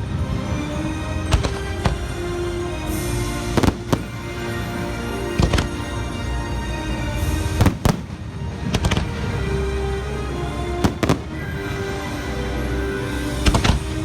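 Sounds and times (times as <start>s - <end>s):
show music: 0.0s - 14.0s
fireworks bangs: 1.3s - 2.2s, 3.4s - 4.5s, 5.4s - 6.0s, 7.4s - 9.3s, 10.8s - 11.5s.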